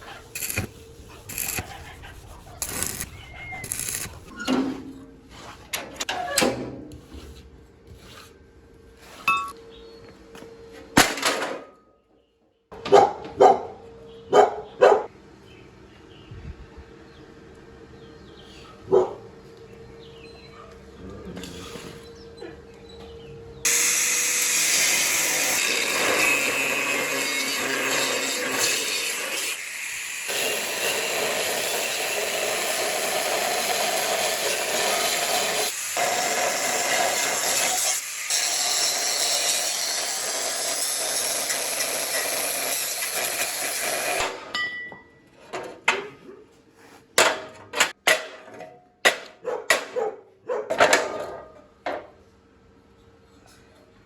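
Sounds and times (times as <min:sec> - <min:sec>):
power tool running: 0:23.7 - 0:44.2.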